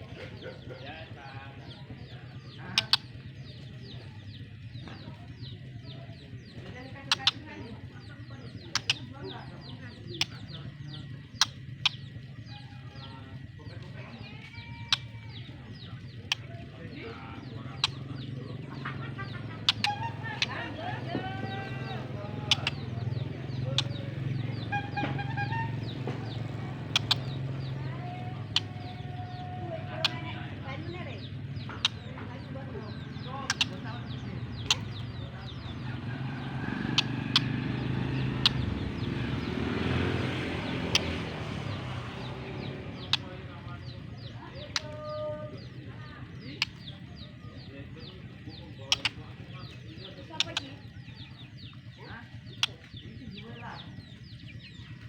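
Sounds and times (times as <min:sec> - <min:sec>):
birds chirping: 0:00.0 - 0:55.0
engine running: 0:00.0 - 0:55.0
steady low hum: 0:00.0 - 0:55.0
sharp clicks: 0:02.5 - 0:05.0, 0:06.4 - 0:07.5, 0:08.5 - 0:09.2, 0:10.2 - 0:12.2, 0:14.6 - 0:16.7, 0:17.4 - 0:30.6, 0:31.2 - 0:45.0, 0:45.6 - 0:47.4, 0:48.2 - 0:51.8.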